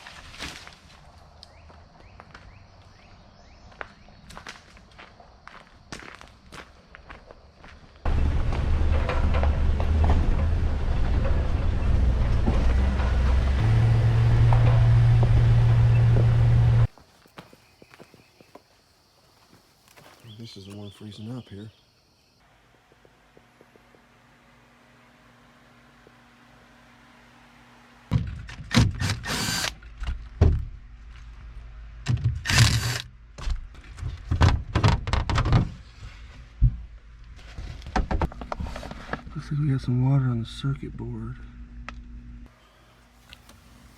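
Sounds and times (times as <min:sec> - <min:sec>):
motor humming: 0:08.1 - 0:16.9, 0:29.0 - 0:29.8.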